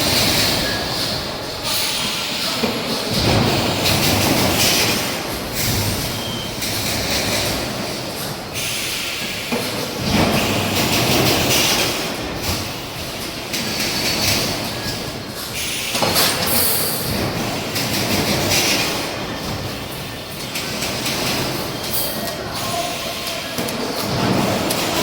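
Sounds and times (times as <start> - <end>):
factory machinery rumble and clatter: 0.0 - 25.0.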